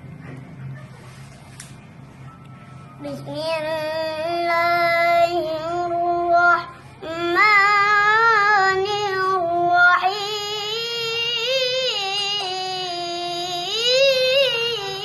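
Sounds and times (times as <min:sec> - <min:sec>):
person chanting recitation: 0:03.1 - 0:15.0.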